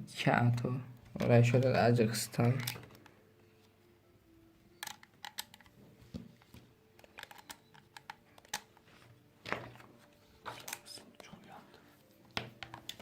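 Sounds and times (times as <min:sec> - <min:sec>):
small tools clicking and tapping: 0:02.4 - 0:03.1, 0:04.8 - 0:08.8, 0:12.4 - 0:13.0.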